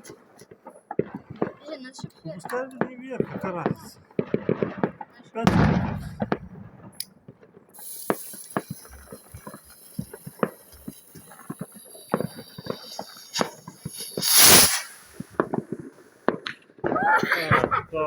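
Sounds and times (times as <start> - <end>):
fireworks cracking and popping: 0.0 - 18.0
firework bang: 4.2 - 7.0, 7.8 - 15.7
high hiss: 7.8 - 16.2.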